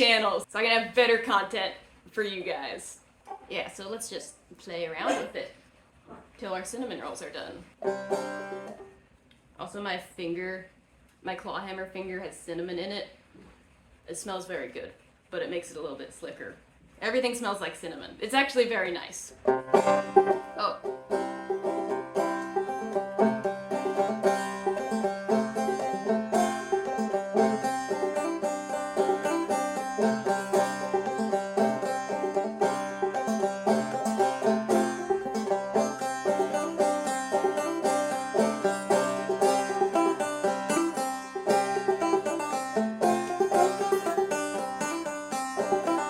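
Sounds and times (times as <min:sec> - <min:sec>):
banjo plucked notes: 0:05.0 - 0:05.4, 0:06.9 - 0:08.9, 0:19.4 - 0:46.0.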